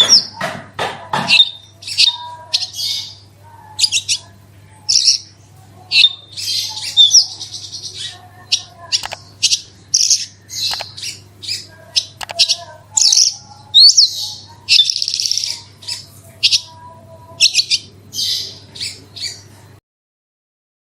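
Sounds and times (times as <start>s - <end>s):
lark singing buzzy trills: 1.3s - 4.3s, 5.9s - 16.8s, 17.4s - 19.4s.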